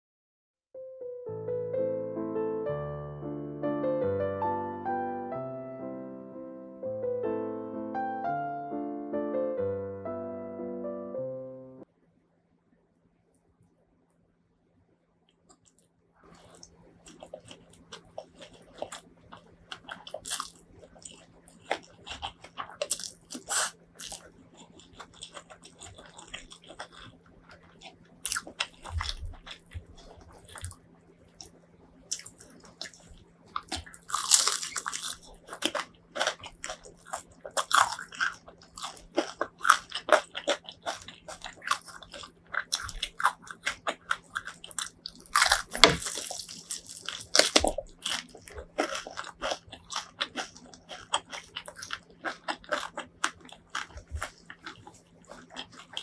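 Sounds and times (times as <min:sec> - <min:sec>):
chewing: 0:15.5 - 0:56.0
crunchy bites into fried chicken: 0:16.3 - 0:30.8, 0:31.4 - 0:56.0.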